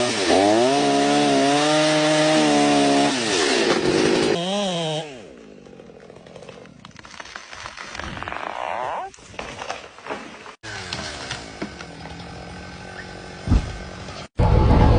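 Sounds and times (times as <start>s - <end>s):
chainsaw revving: 0.0s - 6.6s, 10.6s - 14.2s.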